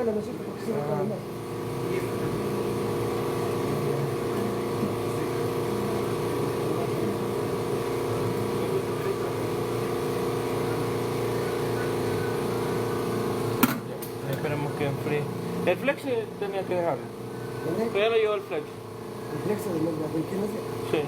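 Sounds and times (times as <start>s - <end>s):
hot air gun humming: 0.0s - 21.0s.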